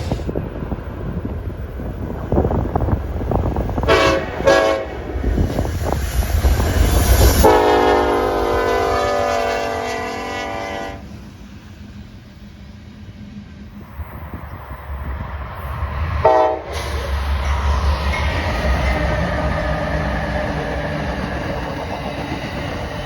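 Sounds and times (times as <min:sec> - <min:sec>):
train rumble and wheel clicking: 0:00.0 - 0:23.0
locomotive air horn blasts: 0:03.9 - 0:05.1, 0:07.4 - 0:11.1, 0:16.2 - 0:17.1.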